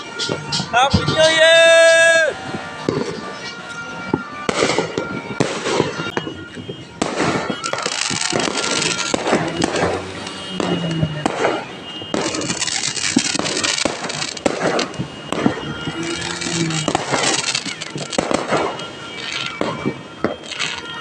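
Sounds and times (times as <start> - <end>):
music: 0.0 - 10.0, 16.2 - 21.0
fireworks crackling and popping: 0.0 - 21.0.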